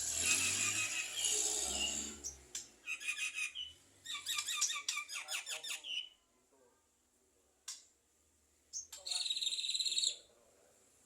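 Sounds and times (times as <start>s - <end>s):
squeaky bird chirps and clicks: 2.5s - 5.9s.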